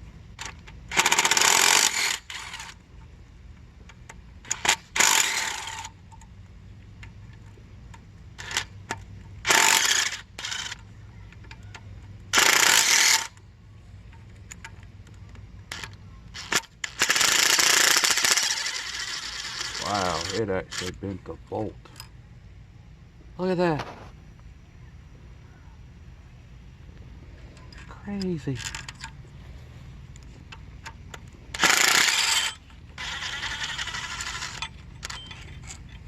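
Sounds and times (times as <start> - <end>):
impact wrench running: 0.4 - 2.8, 4.4 - 6.0, 8.4 - 10.8, 12.3 - 13.4, 15.7 - 21.0, 30.2 - 36.0
tools and parts clicking: 0.4 - 2.8, 3.5 - 13.4, 14.0 - 21.0, 21.8 - 22.2, 27.4 - 29.4, 30.1 - 36.0.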